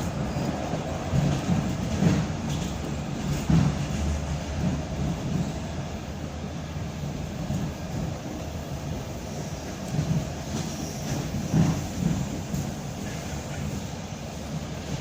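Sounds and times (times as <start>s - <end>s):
clickety-clack over rail joints: 0.0s - 15.0s
train wheels rumbling on rail: 0.0s - 15.0s.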